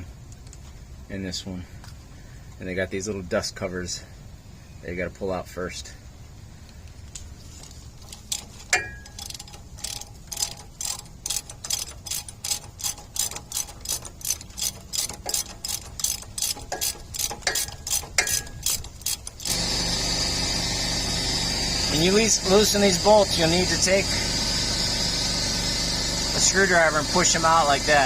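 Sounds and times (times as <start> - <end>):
ratchet wrench clicking: 7.6 - 19.6.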